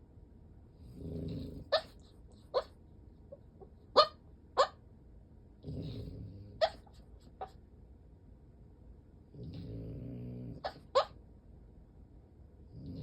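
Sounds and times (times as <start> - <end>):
dog snoring: 0.8 - 1.9, 5.6 - 6.8, 9.3 - 10.8, 12.7 - 13.0
dog yipping in sleep: 1.7 - 2.8, 4.0 - 4.8, 6.6 - 7.6, 10.6 - 11.2.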